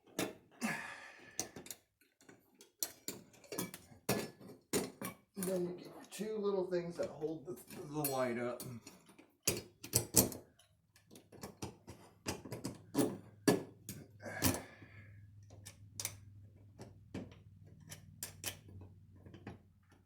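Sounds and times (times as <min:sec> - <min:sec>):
metal hardware clicks and taps: 0:07.7 - 0:14.6, 0:15.4 - 0:20.0.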